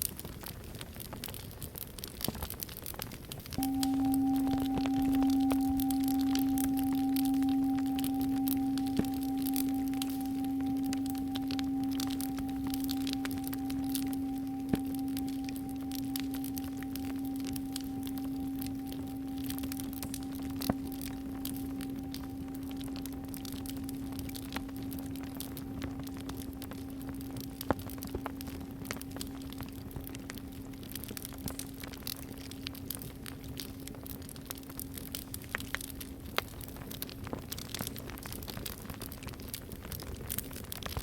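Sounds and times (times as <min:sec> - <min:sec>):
campfire crackling: 0:00.0 - 0:41.0
singing bowl ringing: 0:03.6 - 0:34.8.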